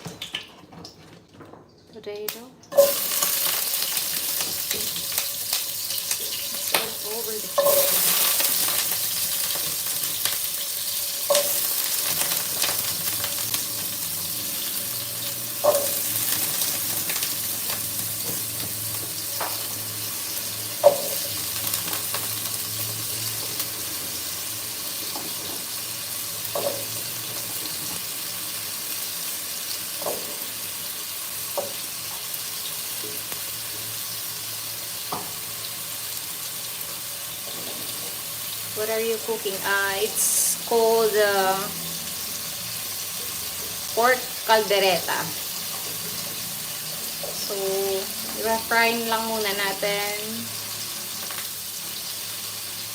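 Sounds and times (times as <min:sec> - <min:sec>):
potatoes sizzling in oil: 0:02.2 - 0:52.9.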